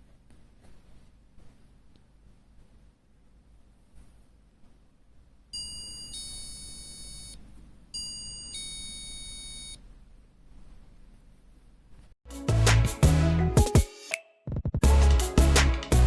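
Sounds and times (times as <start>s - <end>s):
electronic two-tone door chime: 5.6s - 7.4s, 8.0s - 9.8s.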